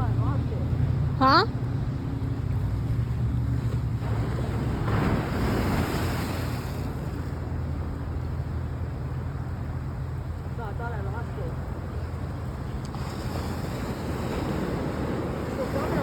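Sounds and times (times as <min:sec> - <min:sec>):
waves washing on shore: 0:02.6 - 0:16.0.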